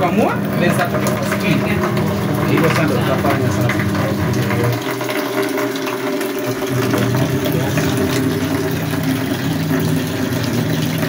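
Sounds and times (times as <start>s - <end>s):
washing machine motor hum: 0.0s - 11.0s
water churning in tub: 0.0s - 11.0s.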